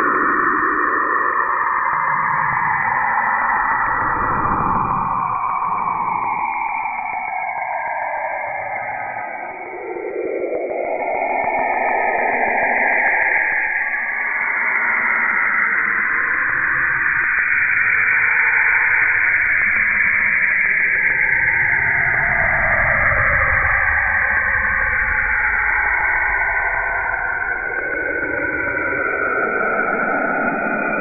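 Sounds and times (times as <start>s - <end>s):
low rumble: 3.1s - 6.9s.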